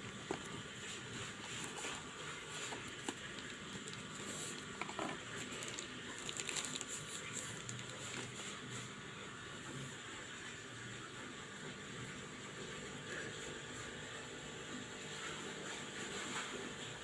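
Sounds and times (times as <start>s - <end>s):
taps and rustles of handling: 0.0s - 8.7s.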